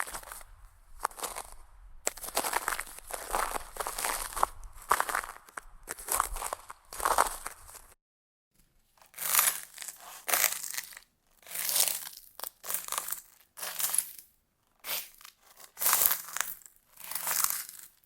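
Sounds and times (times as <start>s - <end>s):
footsteps crunching on broken glass: 0.0s - 8.0s, 9.2s - 11.0s.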